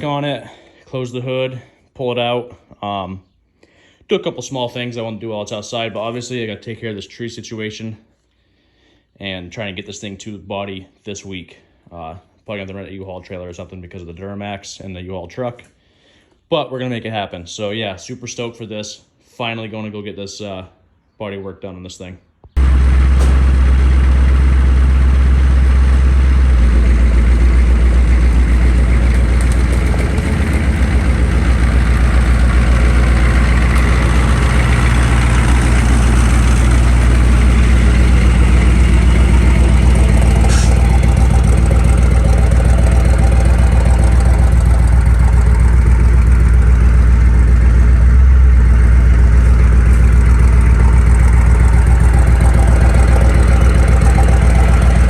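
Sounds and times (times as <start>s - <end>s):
diesel engine idling: 22.6s - 55.0s.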